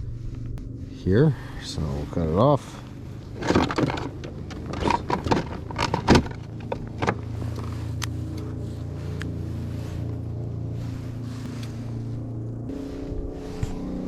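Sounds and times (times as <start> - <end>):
background music with low tone: 0.0 - 4.5, 6.4 - 14.0
fishing gear clicking and rustling: 3.2 - 9.4.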